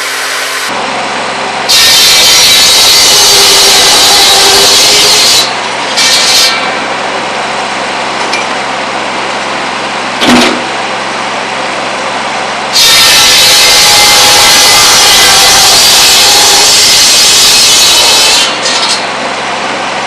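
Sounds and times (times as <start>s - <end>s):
diesel engine running: 0.0s - 1.7s, 6.6s - 12.8s
buzz saw cutting wood: 1.7s - 6.7s, 12.8s - 19.0s.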